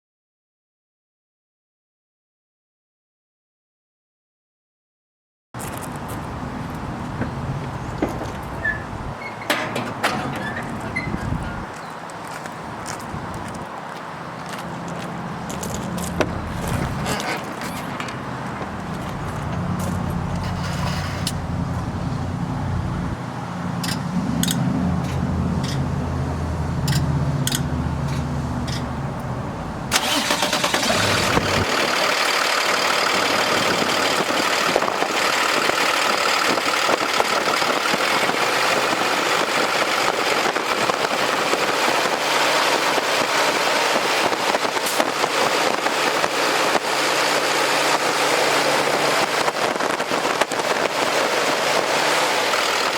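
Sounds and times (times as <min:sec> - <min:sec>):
steady rushing noise: 0:05.6 - 0:52.9
diesel engine idling: 0:24.8 - 0:40.2.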